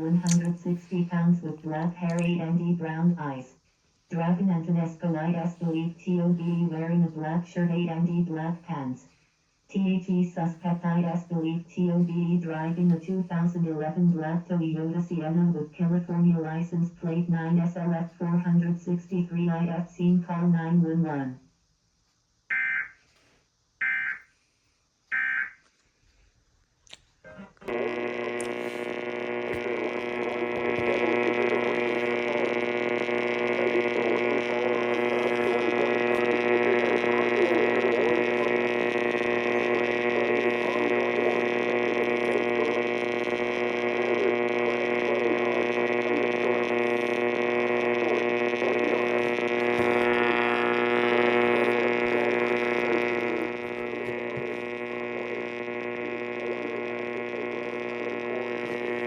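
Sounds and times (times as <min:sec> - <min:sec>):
electrical buzz: 0:00.0 - 0:03.4, 0:27.6 - 0:59.0
radio broadcast: 0:00.0 - 0:09.1, 0:09.7 - 0:21.4, 0:23.8 - 0:24.2, 0:27.3 - 0:59.0.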